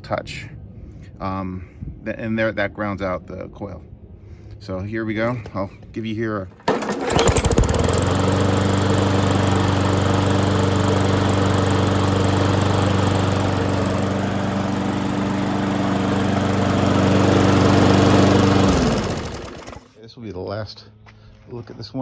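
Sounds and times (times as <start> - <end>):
push mower engine running: 6.6 - 20.0.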